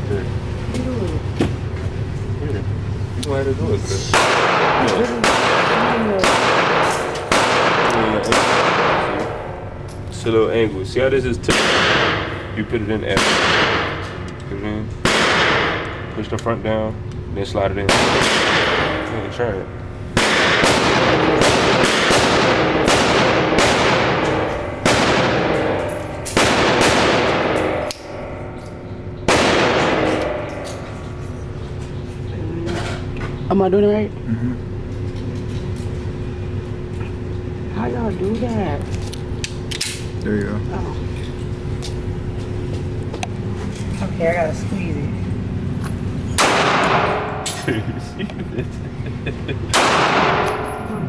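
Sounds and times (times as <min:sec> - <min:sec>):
gunshots with echoing tail: 0:04.2 - 0:09.6, 0:11.5 - 0:12.3, 0:13.2 - 0:13.9, 0:15.0 - 0:15.9, 0:17.9 - 0:19.2, 0:20.2 - 0:28.6, 0:29.3 - 0:30.7, 0:46.4 - 0:47.5, 0:49.7 - 0:50.8.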